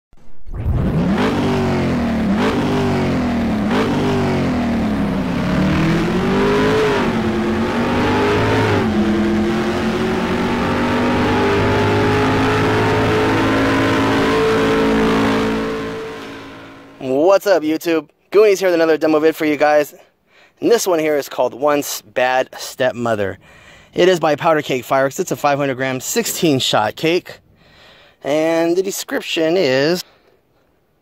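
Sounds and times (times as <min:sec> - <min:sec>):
engine revving: 0:00.2 - 0:17.1.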